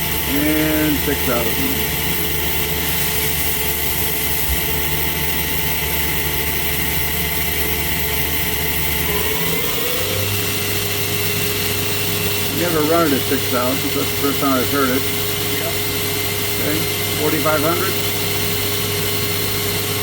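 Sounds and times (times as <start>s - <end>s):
lathe spindle whine: 0.0s - 20.0s.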